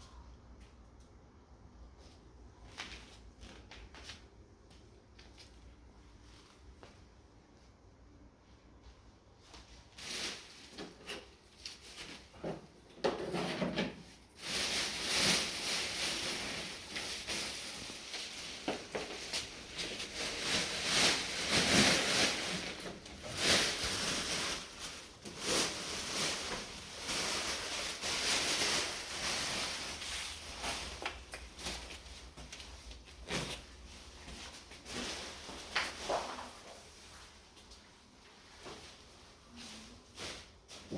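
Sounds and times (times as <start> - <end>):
packaging rustling: 14.2 - 36.4.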